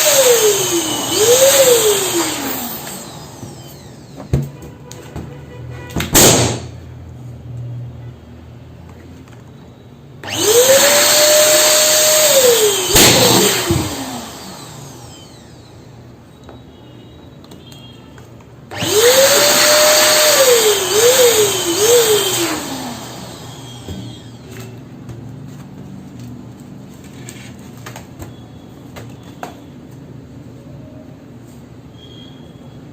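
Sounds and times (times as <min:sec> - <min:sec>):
electric balloon pump whining: 0:00.0 - 0:04.8, 0:10.2 - 0:16.5, 0:18.7 - 0:24.8
balloon bursting: 0:06.0 - 0:06.8, 0:12.9 - 0:14.0.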